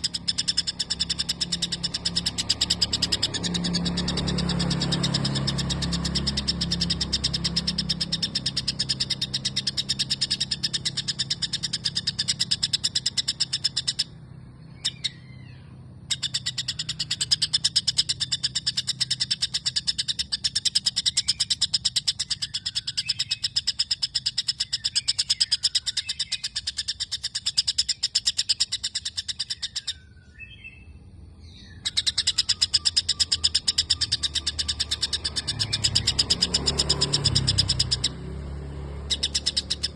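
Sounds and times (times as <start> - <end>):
soft gliding bird whistles: 0.0 - 14.1
bird singing fast chirps: 0.0 - 39.9.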